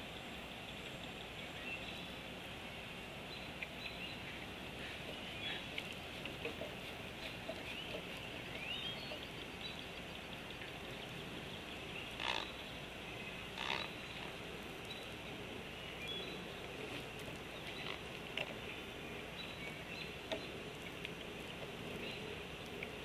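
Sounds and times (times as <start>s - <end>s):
outdoor background noise: 0.0s - 23.0s.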